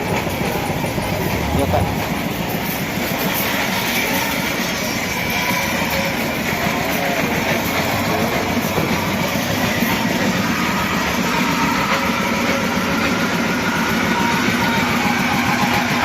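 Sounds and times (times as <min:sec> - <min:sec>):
fairground ride machinery rumble: 0:00.0 - 0:16.0.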